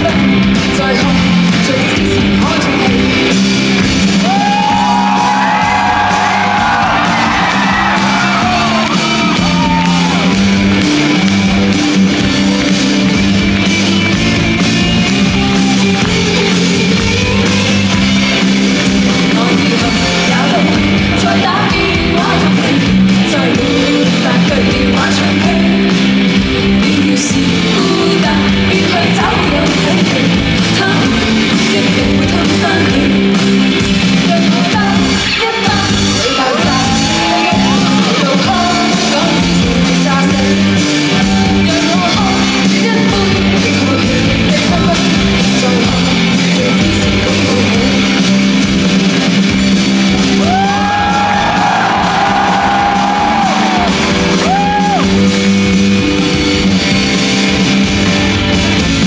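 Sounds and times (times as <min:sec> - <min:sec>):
guitar: 0:00.0 - 0:59.0
live rock band: 0:00.0 - 0:59.0
person singing: 0:19.1 - 0:26.1, 0:26.8 - 0:33.4, 0:34.2 - 0:48.3.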